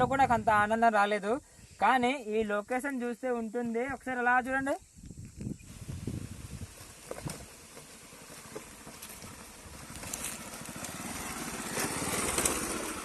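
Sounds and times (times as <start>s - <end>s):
motorcycle engine running: 5.7s - 13.0s.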